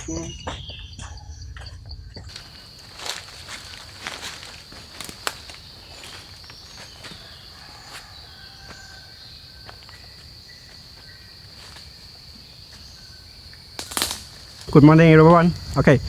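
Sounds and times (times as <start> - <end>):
insects droning: 0.0 - 16.0
footsteps crunching on forest floor: 2.3 - 15.0.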